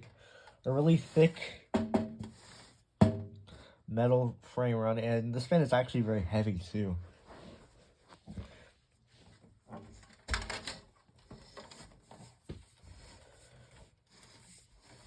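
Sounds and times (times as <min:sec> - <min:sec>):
solid thump: 0:03.0 - 0:03.4.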